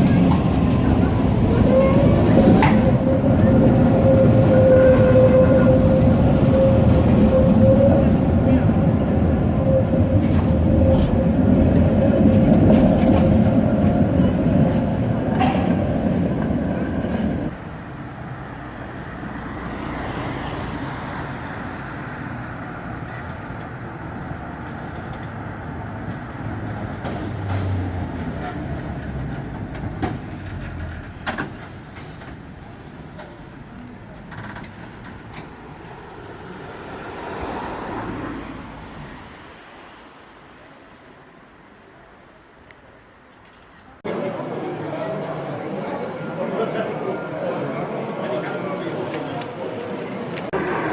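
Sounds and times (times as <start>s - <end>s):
tram wheels squealing: 0.0s - 17.5s, 21.2s - 22.4s
tram running on rails: 0.0s - 50.9s.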